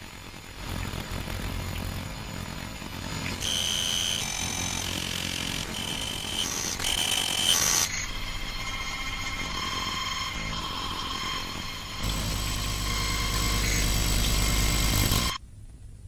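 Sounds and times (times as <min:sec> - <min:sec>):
high electronic alert tones: 0:03.4 - 0:07.9.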